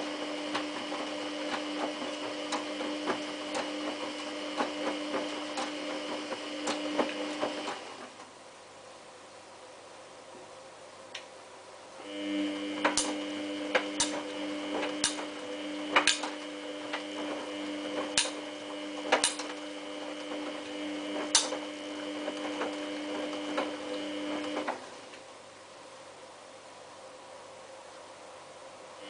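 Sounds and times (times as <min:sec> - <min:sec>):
washing machine drum motor whine: 0:00.0 - 0:08.2, 0:12.0 - 0:25.2
clicks and knocks of tumbling load: 0:00.2 - 0:08.3.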